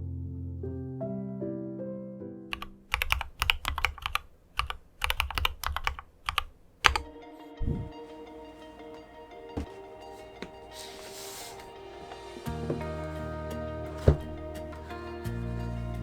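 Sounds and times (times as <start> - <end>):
soft piano background music: 0.0 - 3.2, 7.0 - 16.0
mechanical keyboard typing: 2.5 - 7.1.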